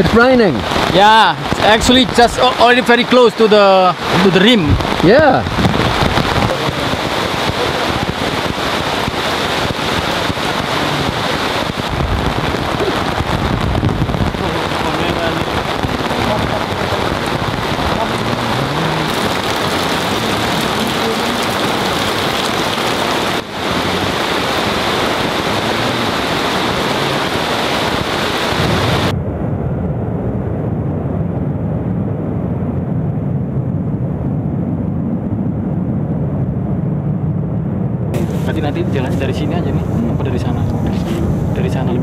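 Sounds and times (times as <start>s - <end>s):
heavy rain hissing: 0.0s - 29.1s, 38.2s - 42.0s.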